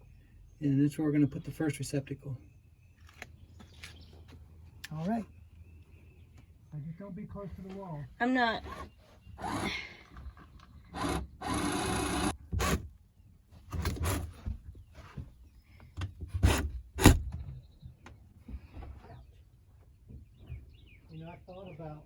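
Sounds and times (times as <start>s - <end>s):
power drill boring: 9.4s - 10.0s, 10.9s - 12.8s.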